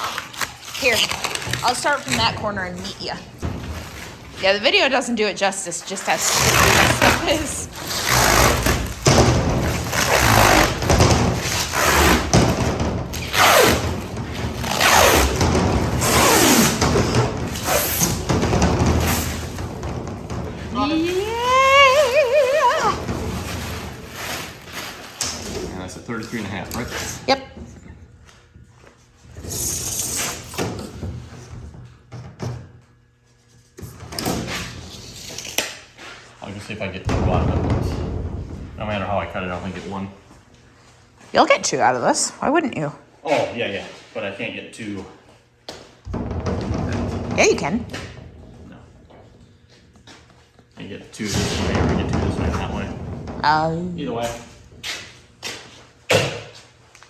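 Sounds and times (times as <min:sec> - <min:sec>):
plastic film peeling: 0:00.0 - 0:02.3, 0:06.0 - 0:18.2
knocks and thumps: 0:00.8 - 0:25.9, 0:37.0 - 0:40.6, 0:45.7 - 0:50.2, 0:51.2 - 0:56.6
building material scraping: 0:05.6 - 0:27.2.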